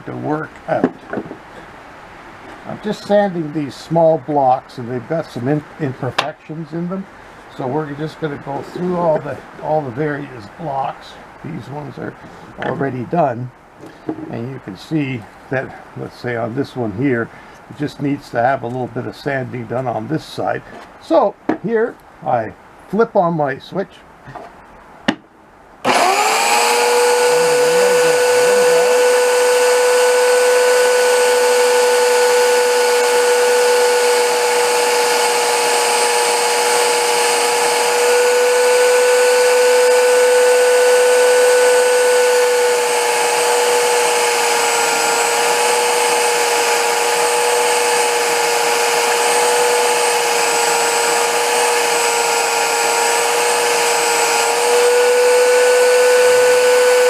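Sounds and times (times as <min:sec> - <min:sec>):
belt sander whining: 0:25.8 - 0:57.0.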